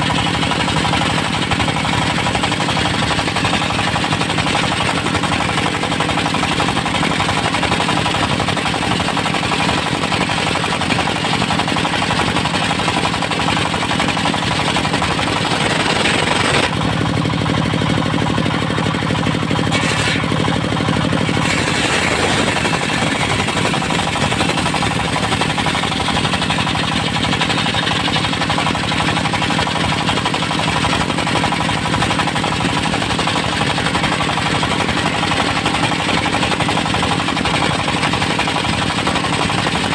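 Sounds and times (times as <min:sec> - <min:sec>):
sawmill engine running: 0:00.0 - 0:39.9
saw blade hissing through log: 0:19.6 - 0:20.4.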